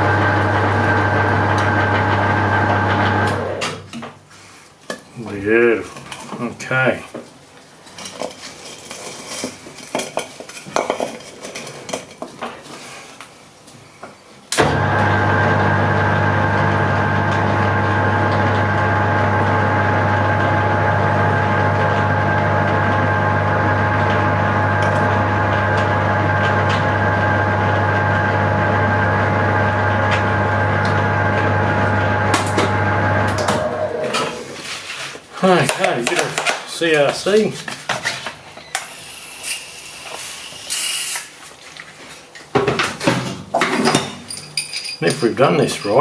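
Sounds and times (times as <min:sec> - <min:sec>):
metal lathe running with whine: 0:00.0 - 0:03.6, 0:14.6 - 0:34.4
metal parts and tools clinking: 0:43.6 - 0:46.0.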